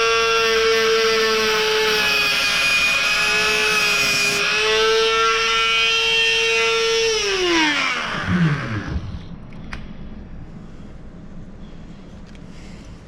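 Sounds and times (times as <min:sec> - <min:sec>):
rotary tool whining: 0:00.0 - 0:09.4.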